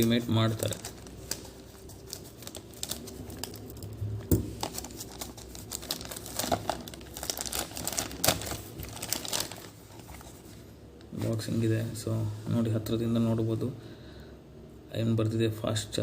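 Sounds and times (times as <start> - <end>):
packaging crinkling: 0.0 - 10.6.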